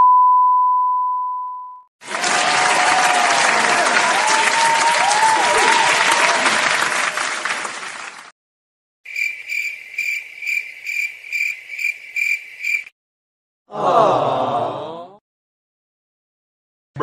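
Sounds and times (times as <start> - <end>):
crowd applause: 2.0 - 8.3
cricket chirping: 9.1 - 12.9.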